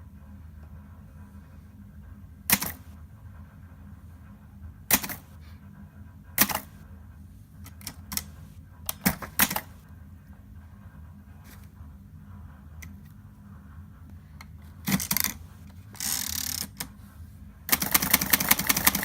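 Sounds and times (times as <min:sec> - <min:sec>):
typewriter key clacks: 0:02.5 - 0:02.8, 0:04.9 - 0:05.2, 0:06.4 - 0:06.7, 0:08.9 - 0:09.7.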